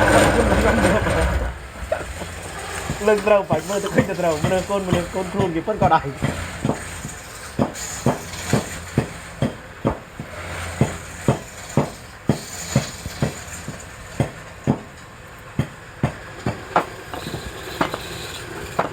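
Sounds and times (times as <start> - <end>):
sharp knocks: 0.0 - 14.9.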